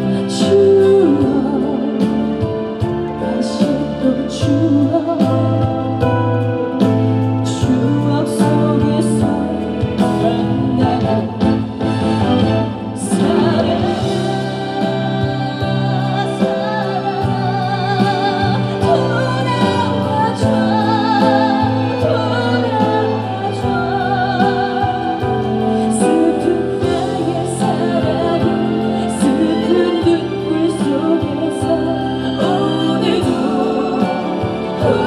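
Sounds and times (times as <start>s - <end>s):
live band with keyboard: 0.0s - 35.0s.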